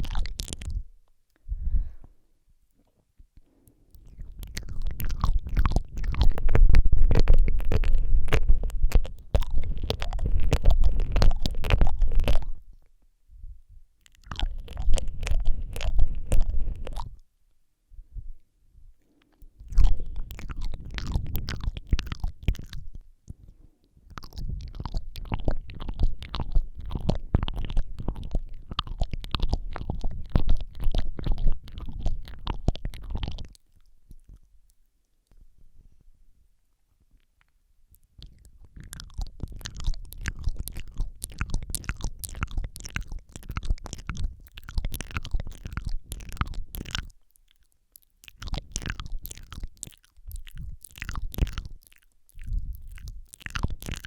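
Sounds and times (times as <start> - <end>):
wet mouth clicks and smacks: 0.0 - 1.4, 3.4 - 12.9, 14.0 - 17.2, 19.0 - 35.4, 37.2 - 54.0
low rumble from microphone contact: 0.0 - 2.2, 4.0 - 17.2, 17.9 - 34.6, 52.4 - 54.0.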